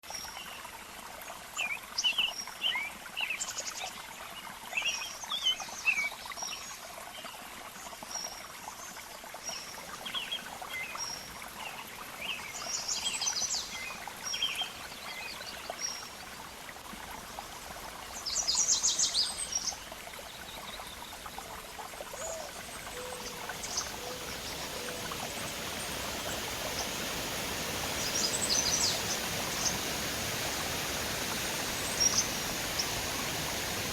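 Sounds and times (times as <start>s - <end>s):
birds chirping: 9.7s - 33.9s
waterfall rushing: 9.8s - 33.9s.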